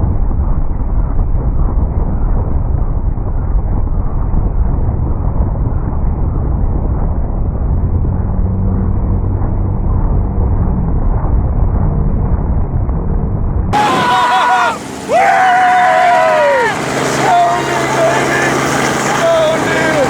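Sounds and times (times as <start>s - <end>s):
low hum: 0.0s - 20.0s
helicopter rotor and engine: 13.7s - 20.0s.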